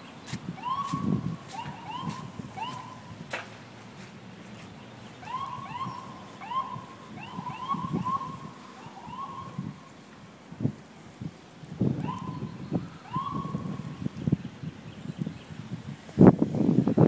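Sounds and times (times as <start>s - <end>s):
electronic alarms whooping: 0.6s - 3.1s, 5.2s - 9.7s.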